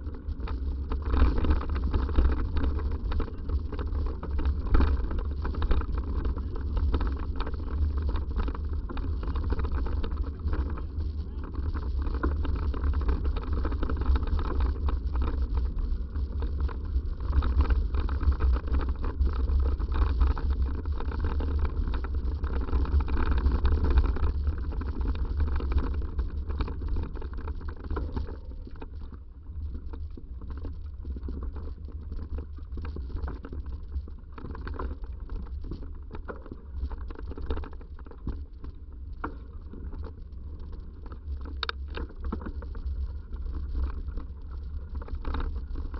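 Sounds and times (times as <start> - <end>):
bicycle rattling and clicking: 0.0 - 45.9.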